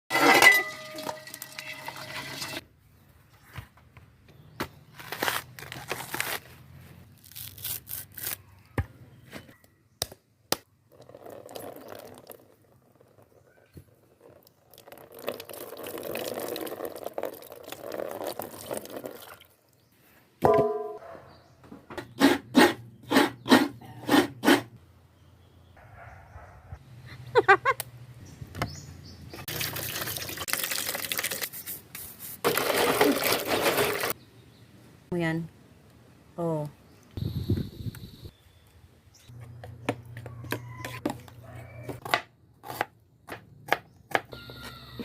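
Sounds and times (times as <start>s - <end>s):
liquid splashing: 29.5s - 31.4s.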